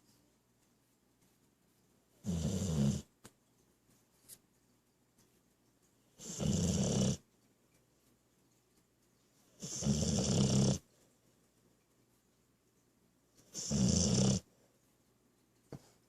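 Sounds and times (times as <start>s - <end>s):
dog snoring: 2.2s - 3.1s, 6.2s - 7.2s, 9.6s - 10.9s, 13.5s - 14.5s.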